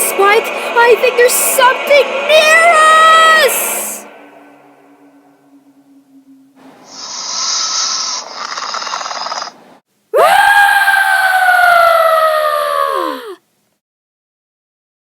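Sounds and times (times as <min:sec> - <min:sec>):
creature hiss: 0:06.8 - 0:09.5
creature cry falling in pitch: 0:10.2 - 0:13.4.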